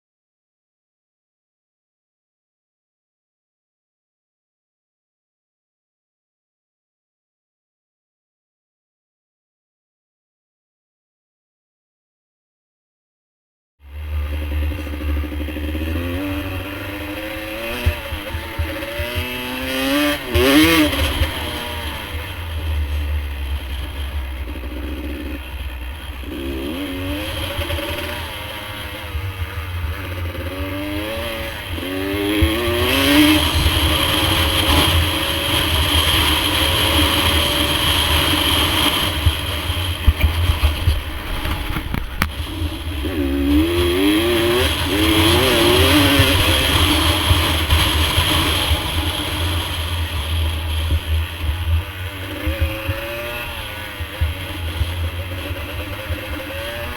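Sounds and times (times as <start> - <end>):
dirt bike engine revving: 13.8 - 56.9.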